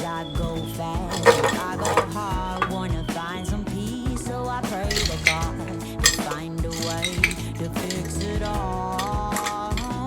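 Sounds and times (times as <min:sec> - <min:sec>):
background pop music: 0:00.0 - 0:10.0
kitchenware clinking: 0:01.0 - 0:03.0, 0:04.2 - 0:10.0.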